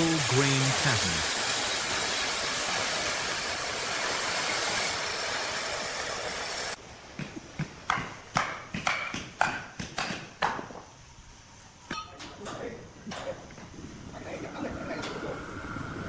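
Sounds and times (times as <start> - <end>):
sawmill machinery rushing: 0.0 - 6.8.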